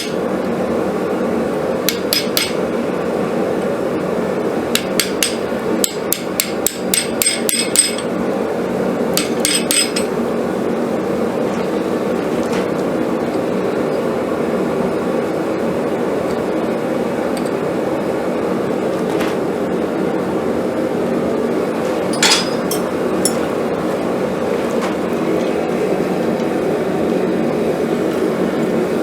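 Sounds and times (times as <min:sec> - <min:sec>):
metal clinks and taps: 0:22.1 - 0:23.4.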